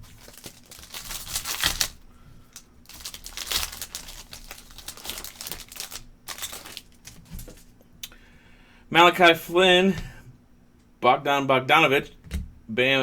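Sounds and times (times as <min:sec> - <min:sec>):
wrapper tearing and crinkling: 0:00.0 - 0:07.5.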